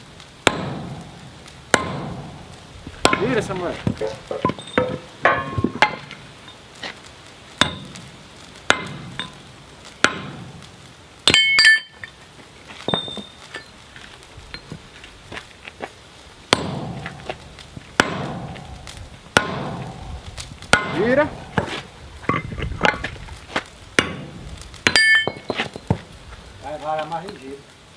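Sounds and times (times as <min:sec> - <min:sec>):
hammer striking steel on anvil: 0:00.4 - 0:01.1, 0:01.7 - 0:02.3, 0:03.0 - 0:06.1, 0:07.6 - 0:08.0, 0:08.7 - 0:09.4, 0:10.0 - 0:10.5, 0:11.3 - 0:12.0, 0:16.5 - 0:17.4, 0:18.0 - 0:18.7, 0:19.4 - 0:20.0, 0:20.7 - 0:21.7, 0:24.0 - 0:24.3, 0:24.9 - 0:25.5.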